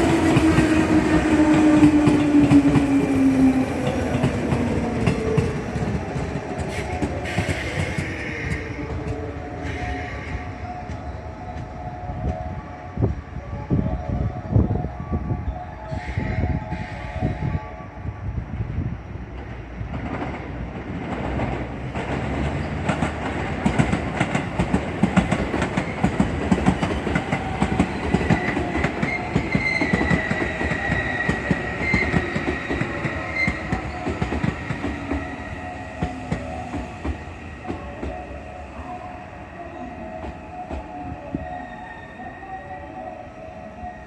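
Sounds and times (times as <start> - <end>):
electric train moving: 0.0 - 44.0
train wheels clacking over rail joints: 3.8 - 9.9, 19.4 - 35.3.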